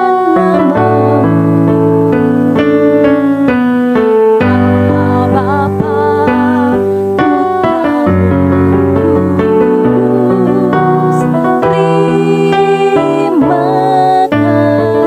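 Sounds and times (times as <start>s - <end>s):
slow electronic keyboard piece: 0.0s - 15.0s.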